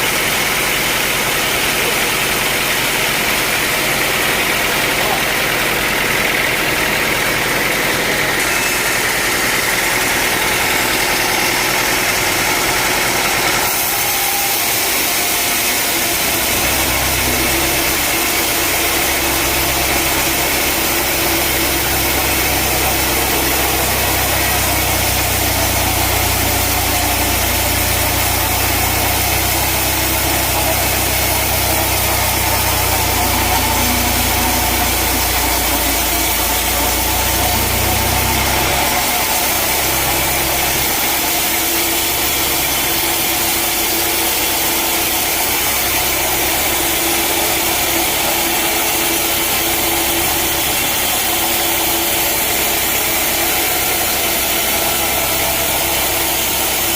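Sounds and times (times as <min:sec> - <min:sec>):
deep engine hum: 0:00.0 - 0:56.9
sawmill machinery running: 0:00.0 - 0:56.9.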